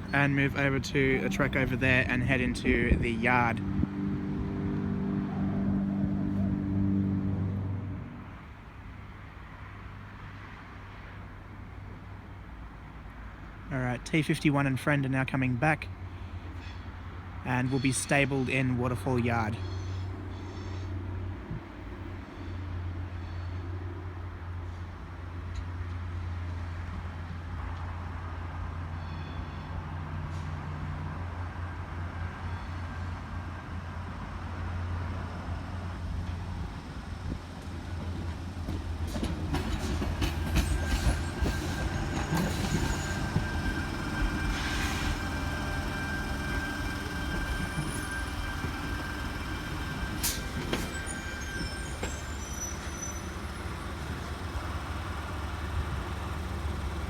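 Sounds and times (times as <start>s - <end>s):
electric train hum: 0.0s - 8.6s, 33.1s - 57.0s
wheels clicking over rail joints: 37.6s - 51.3s
thin wheel squeal: 40.4s - 53.4s.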